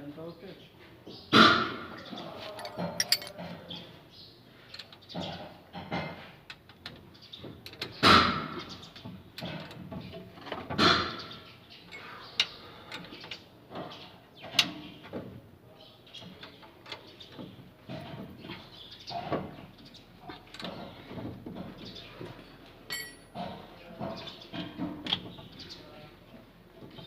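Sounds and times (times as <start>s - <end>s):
metal tools clanking and scraping: 2.3s - 3.5s, 22.9s - 23.5s.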